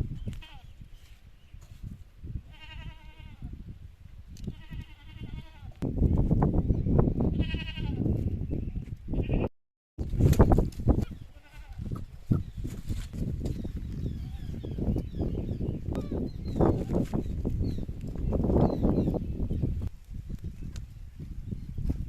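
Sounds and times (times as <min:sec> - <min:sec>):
goat bleating: 0:02.5 - 0:03.5, 0:04.5 - 0:05.8, 0:07.3 - 0:08.0, 0:11.3 - 0:11.9.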